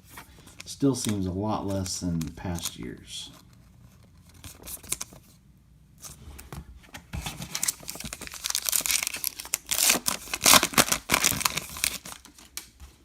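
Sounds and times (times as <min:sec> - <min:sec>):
wrapper tearing and crinkling: 0:07.3 - 0:12.6.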